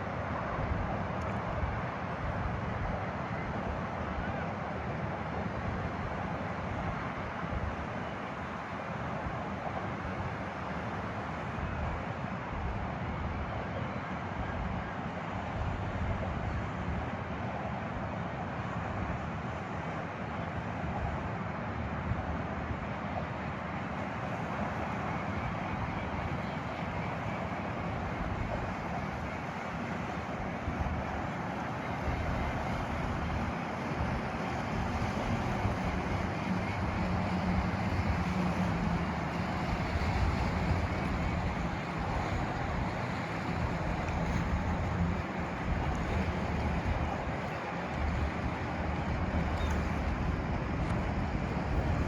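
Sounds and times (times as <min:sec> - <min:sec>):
ship engine rumble: 0:24.7 - 0:52.0
steady low hum: 0:30.0 - 0:52.0
wind buffeting microphone: 0:30.0 - 0:52.0.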